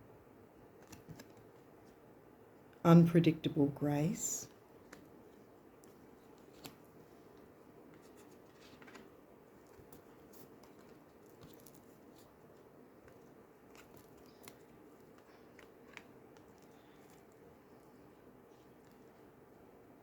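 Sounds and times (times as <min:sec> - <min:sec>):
cards being handled: 0:00.8 - 0:02.0, 0:04.8 - 0:19.4.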